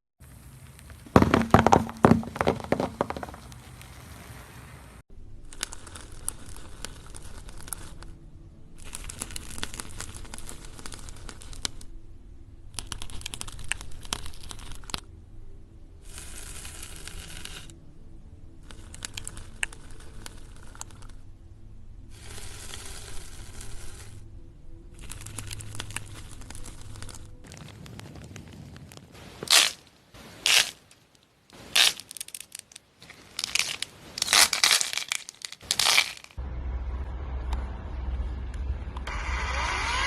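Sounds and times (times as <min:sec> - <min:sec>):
crinkling and tearing: 0:05.4 - 0:08.2, 0:08.8 - 0:11.9, 0:12.7 - 0:15.1, 0:16.1 - 0:17.8, 0:18.6 - 0:21.2, 0:25.0 - 0:36.4.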